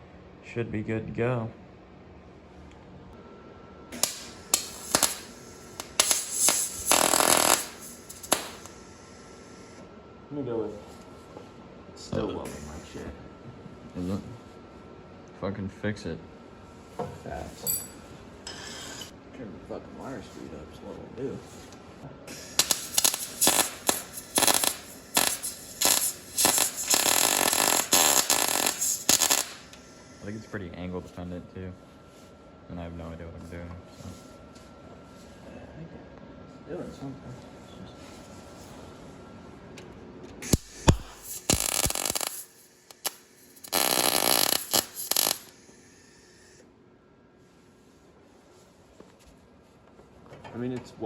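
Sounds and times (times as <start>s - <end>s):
welder arc crackling: 3.9s - 9.7s, 22.3s - 30.5s, 40.4s - 46.2s.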